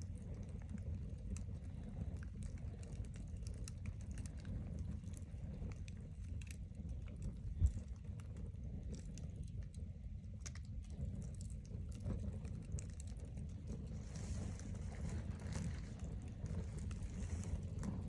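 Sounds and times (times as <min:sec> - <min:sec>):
campfire crackling and popping: 0:00.0 - 0:18.0
low rumble: 0:11.2 - 0:18.0.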